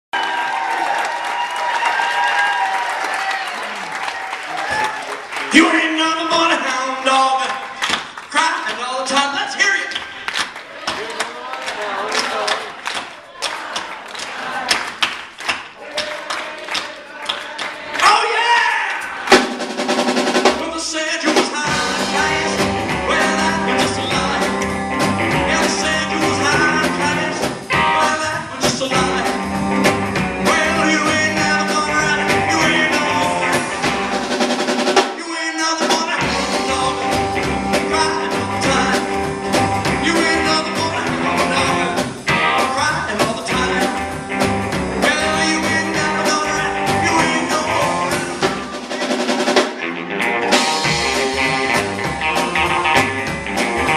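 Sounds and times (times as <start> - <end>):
drum kit: 17.6 - 53.9
upright bass: 20.6 - 34.4, 35.8 - 48.9, 49.8 - 53.9
electric guitar: 21.6 - 34.4, 36.2 - 48.9, 49.7 - 53.9.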